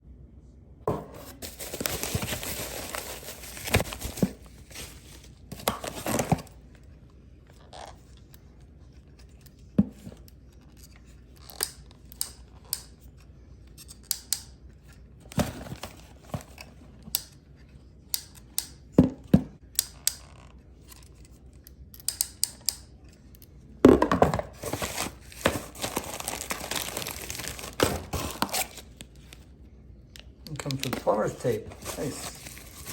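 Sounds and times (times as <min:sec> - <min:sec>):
packaging tearing and crinkling: 0:01.4 - 0:06.5, 0:24.6 - 0:29.4, 0:30.5 - 0:32.9.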